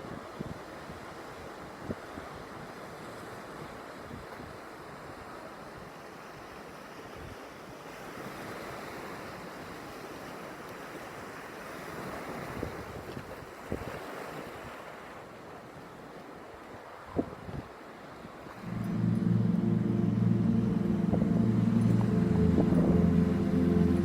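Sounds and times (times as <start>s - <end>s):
ocean surf washing in: 18.5s - 24.0s.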